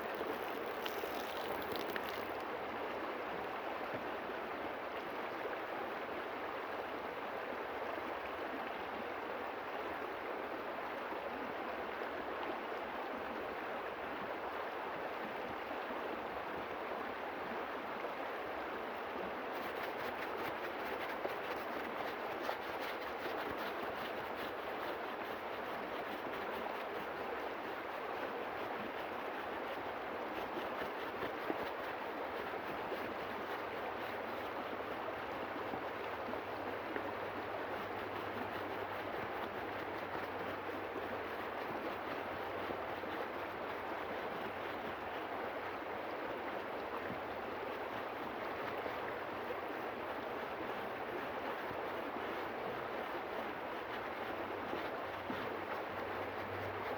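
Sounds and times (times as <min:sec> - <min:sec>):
fine rapid high crackle: 0:00.0 - 0:02.4.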